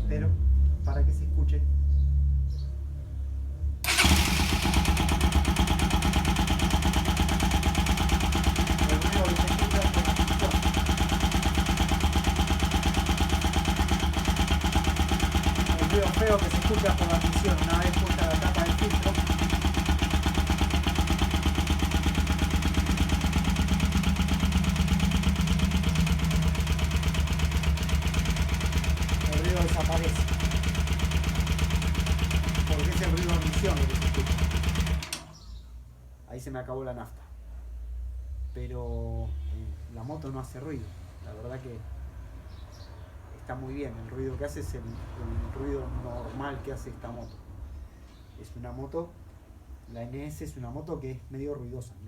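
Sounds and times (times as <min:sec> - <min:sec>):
harsh engine intake noise: 0:03.8 - 0:35.2
motorcycle engine idling: 0:03.9 - 0:35.5.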